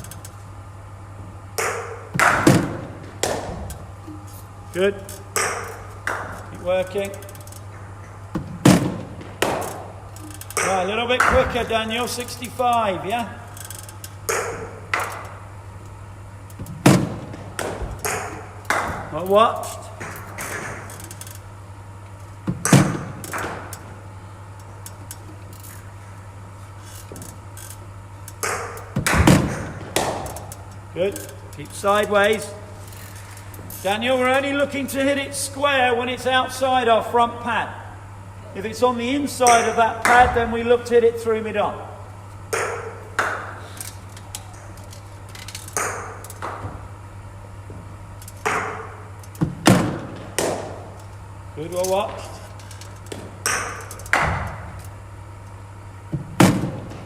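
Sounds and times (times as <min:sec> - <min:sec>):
low steady hum: 0:00.0 - 0:57.0
bowling machine firing ball: 0:01.5 - 0:04.0, 0:04.8 - 0:07.1, 0:07.7 - 0:12.3, 0:14.2 - 0:15.6, 0:16.6 - 0:21.2, 0:22.4 - 0:24.1, 0:28.4 - 0:30.7, 0:39.4 - 0:40.9, 0:42.4 - 0:43.8, 0:45.6 - 0:47.7, 0:48.4 - 0:51.0, 0:53.0 - 0:54.9, 0:56.0 - 0:57.0.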